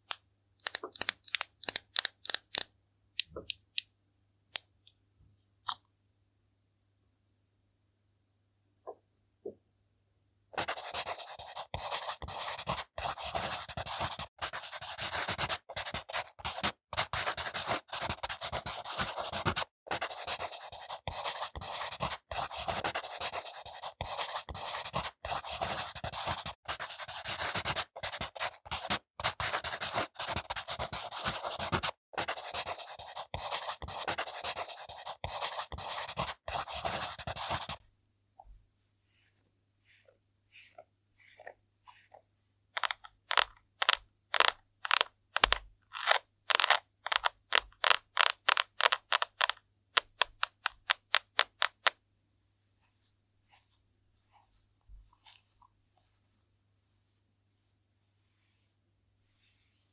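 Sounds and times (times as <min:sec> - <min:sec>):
makeup tool scratching fruit peel: 0:42.8 - 0:51.9.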